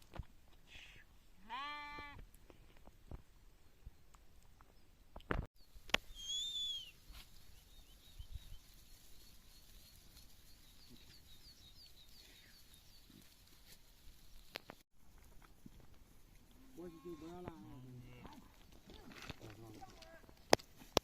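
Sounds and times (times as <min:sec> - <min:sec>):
bird whistled call: 0:06.1 - 0:07.0.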